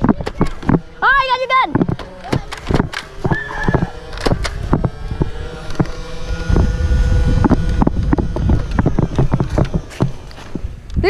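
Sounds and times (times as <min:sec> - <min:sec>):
toy blaster motors whirring: 0:00.0 - 0:10.8
wind buffeting microphone: 0:00.0 - 0:11.0
toy blaster clicks and knocks: 0:01.7 - 0:06.8.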